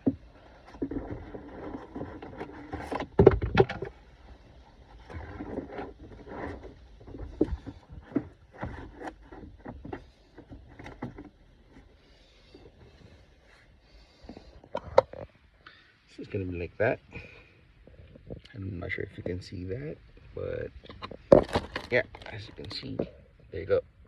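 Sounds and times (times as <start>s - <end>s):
filter scraping and rustling: 0.0s - 23.8s
plastic clicks and knocks: 2.8s - 3.9s.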